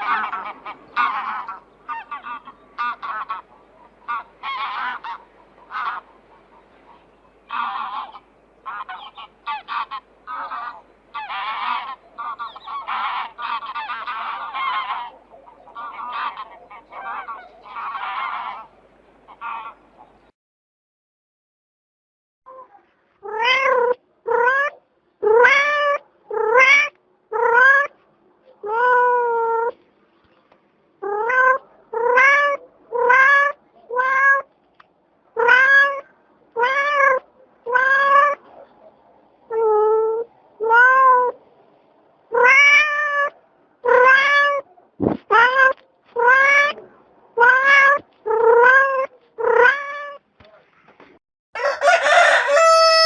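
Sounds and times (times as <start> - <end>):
cat meowing: 23.2 - 27.9, 31.0 - 34.5, 35.4 - 38.4, 39.5 - 41.4, 42.3 - 44.7, 45.3 - 46.8, 47.4 - 50.2.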